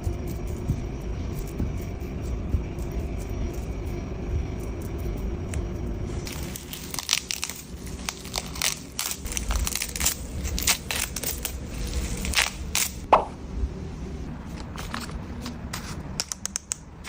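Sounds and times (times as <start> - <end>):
dog chewing and crunching food: 6.1 - 13.1.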